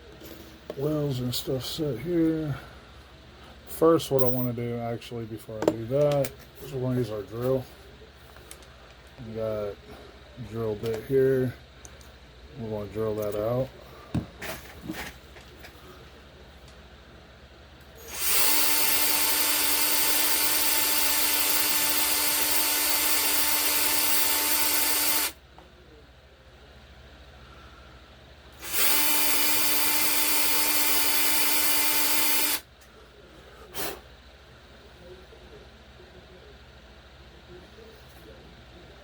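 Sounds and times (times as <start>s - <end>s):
small electric drill running: 18.0s - 25.4s, 28.6s - 32.7s.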